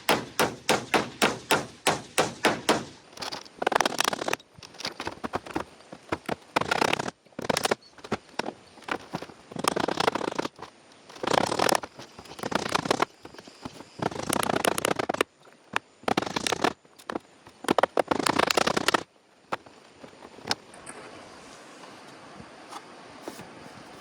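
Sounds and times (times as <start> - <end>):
crackling scratchy scraping: 2.5 - 20.8.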